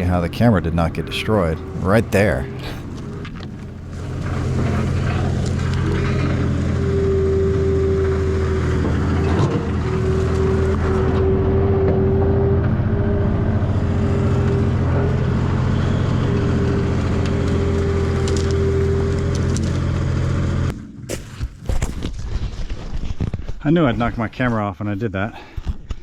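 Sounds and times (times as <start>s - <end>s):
skid steer engine running: 0.0s - 22.2s
sharp knock: 21.1s - 22.2s.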